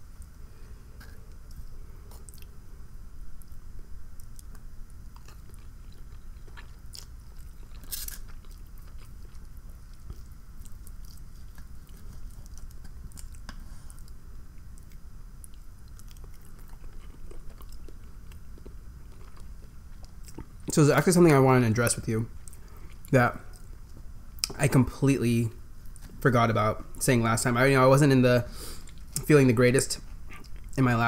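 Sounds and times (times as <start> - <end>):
person chewing: 0.2 - 2.6, 4.2 - 20.7, 30.1 - 30.8.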